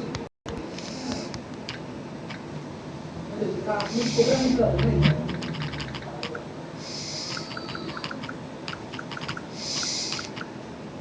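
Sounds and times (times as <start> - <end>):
short breathy hisses: 3.9 - 4.6, 6.8 - 7.4, 9.6 - 10.3.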